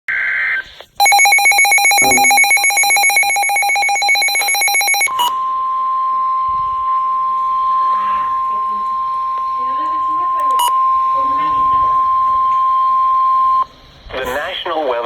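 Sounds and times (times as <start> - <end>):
emergency data burst: 1.0 - 5.4
rapidly trilling alarm: 1.0 - 13.7
steady warning alarm tone: 1.0 - 13.7.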